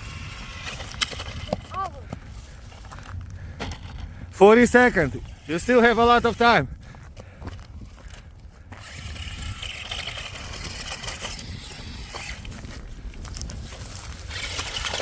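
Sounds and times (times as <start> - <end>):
small electric motor whining: 0.0 - 2.0, 7.8 - 15.0
tyres over ground: 0.0 - 15.0.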